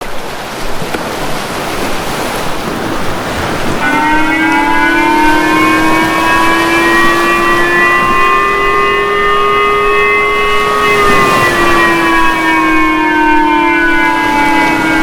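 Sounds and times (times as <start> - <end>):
warning siren rising in pitch: 3.8 - 15.0.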